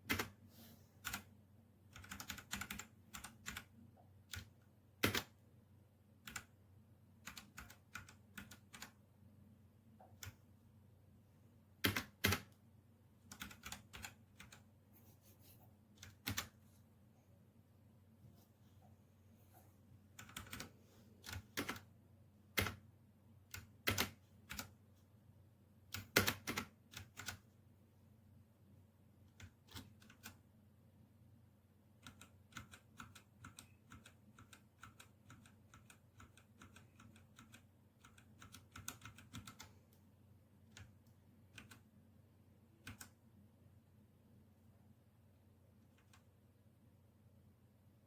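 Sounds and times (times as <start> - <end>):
mechanical keyboard typing: 0.0 - 0.4, 1.0 - 1.3, 1.9 - 5.4, 6.2 - 6.6, 7.2 - 9.0, 11.8 - 12.6, 13.2 - 14.7, 16.0 - 16.6, 20.1 - 21.9, 22.5 - 24.8, 25.9 - 27.4, 29.3 - 30.4, 32.0 - 39.8, 40.6 - 41.9, 42.8 - 43.2.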